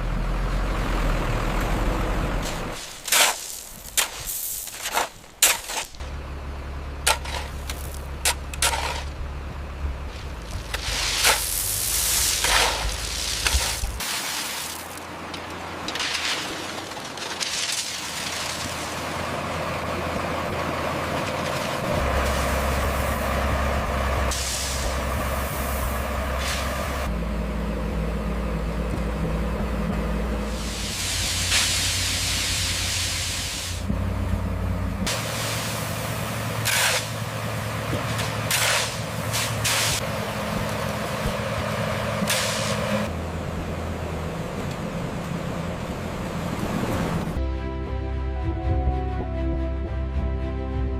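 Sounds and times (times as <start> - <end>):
heavy vehicle engine rumble: 0.0 - 50.9
short hissing bursts: 24.3 - 25.0, 30.5 - 33.8.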